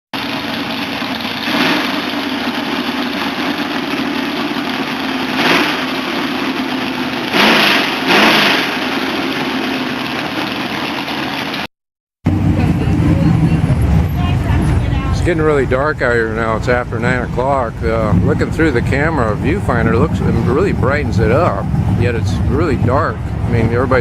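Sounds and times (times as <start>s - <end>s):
vehicle engines rolling past: 12.3s - 24.0s.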